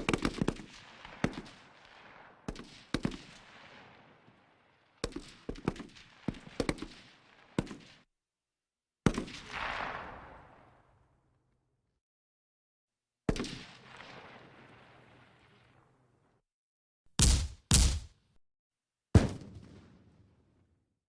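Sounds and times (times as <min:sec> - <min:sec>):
gunshots with echo: 0:17.2 - 0:18.1.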